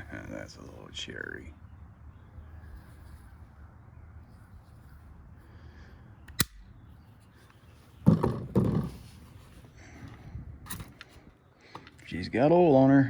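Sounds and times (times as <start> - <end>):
rifle part clicking: 6.3 - 6.7.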